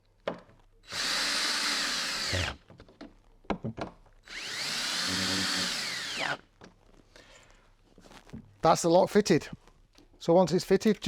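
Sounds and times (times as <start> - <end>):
power drill driving screws: 0.9 - 2.6, 4.3 - 6.4.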